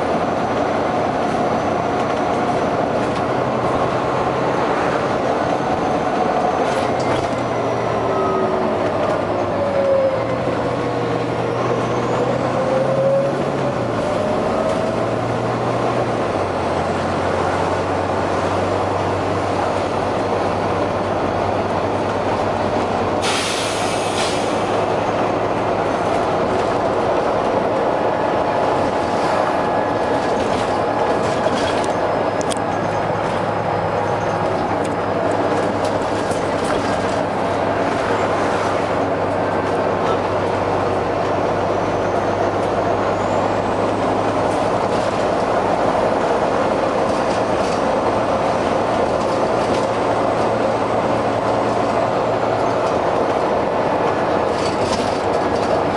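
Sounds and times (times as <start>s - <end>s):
bus diesel engine drone: 0.0s - 55.9s
air hiss burst: 23.2s - 24.6s.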